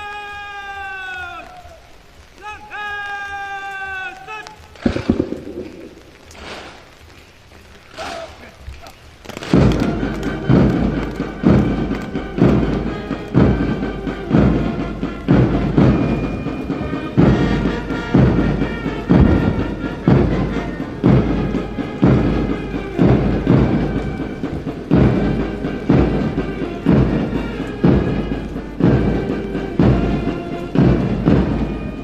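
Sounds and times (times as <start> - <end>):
marching band music: 9.2 - 32.0
bass drum strokes: 9.5 - 32.0.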